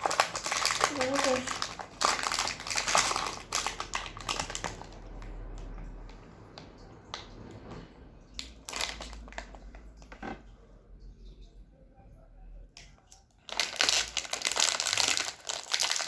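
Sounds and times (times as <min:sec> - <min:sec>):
wrapping crinkling and crackling: 0:00.0 - 0:07.7, 0:08.3 - 0:10.5, 0:12.8 - 0:16.0.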